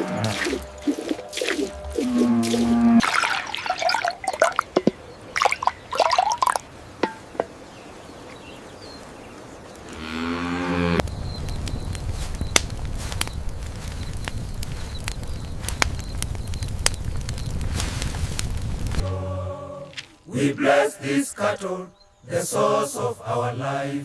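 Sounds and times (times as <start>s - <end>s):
cattle mooing: 0.0s - 0.7s, 1.8s - 3.0s, 9.9s - 11.0s
rustling hiss with clicks: 11.0s - 19.0s.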